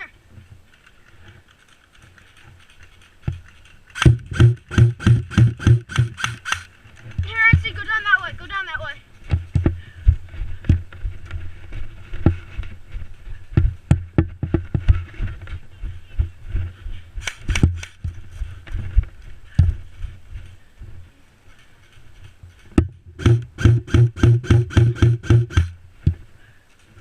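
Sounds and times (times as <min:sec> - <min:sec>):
knocks clicks and thumps: 0:02.1 - 0:07.8, 0:13.5 - 0:15.6, 0:22.6 - 0:26.2.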